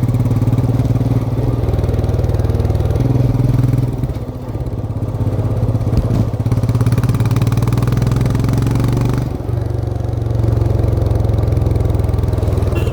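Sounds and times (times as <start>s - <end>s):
motorcycle engine running: 0.0s - 12.9s.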